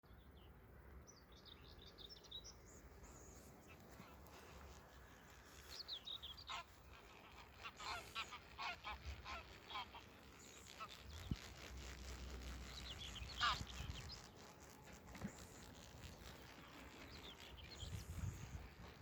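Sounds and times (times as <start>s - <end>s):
faint high goose calls: 6.3s - 11.0s, 13.3s - 13.8s
geese honking: 6.4s - 10.2s.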